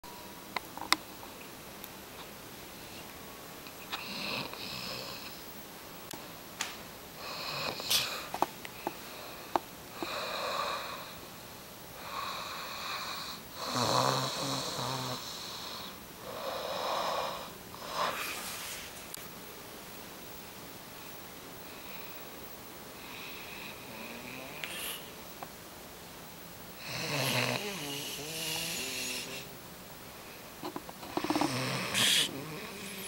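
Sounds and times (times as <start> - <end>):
person snoring: 12.0 - 18.4, 23.1 - 25.1, 26.8 - 29.5, 31.1 - 33.0.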